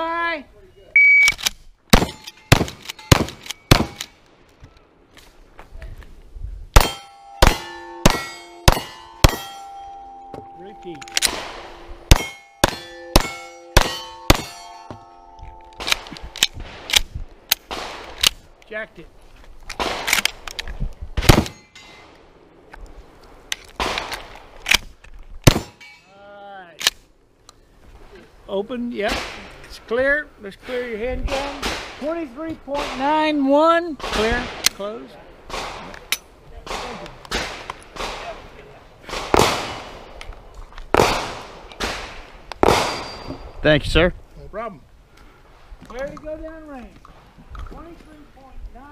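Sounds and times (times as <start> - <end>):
gunshots: 1.3 - 4.2, 6.8 - 9.7, 11.1 - 14.9, 15.8 - 18.4, 19.8 - 20.4, 21.2 - 21.8, 25.4 - 25.9, 31.3 - 32.1, 32.7 - 33.2, 34.0 - 36.0, 36.6 - 40.2, 40.9 - 43.4
shotgun firing: 1.4 - 4.2, 6.8 - 9.8, 11.1 - 15.0, 15.8 - 18.4, 21.2 - 21.7, 25.4 - 25.8, 39.1 - 40.2, 40.9 - 43.4
steel targets clanging: 2.0 - 4.2, 6.8 - 16.1, 25.6 - 26.2, 42.7 - 43.6.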